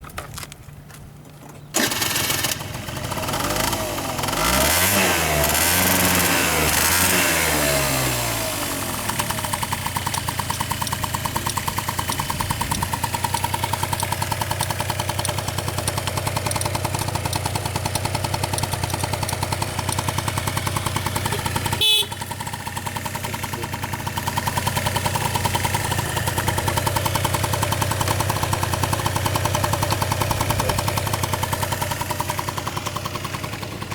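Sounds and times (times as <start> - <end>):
scooter engine revving and idling: 1.8 - 33.9
sharp click: 10.0 - 17.7, 18.4 - 20.4.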